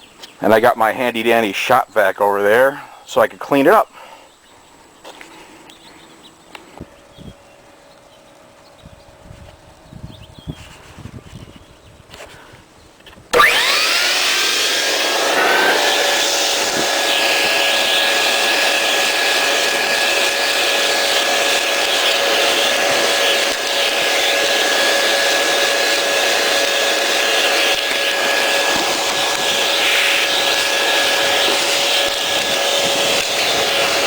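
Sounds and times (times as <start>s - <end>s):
shop vac whining: 13.3s - 34.0s.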